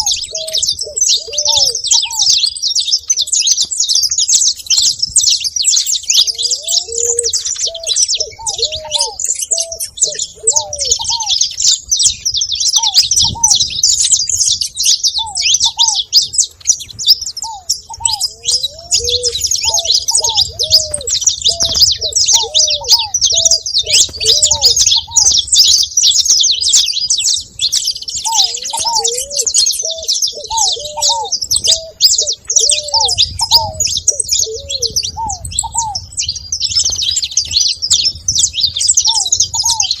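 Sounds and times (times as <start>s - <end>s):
doves cooing: 0.0s - 40.0s
finches chirping: 0.0s - 40.0s.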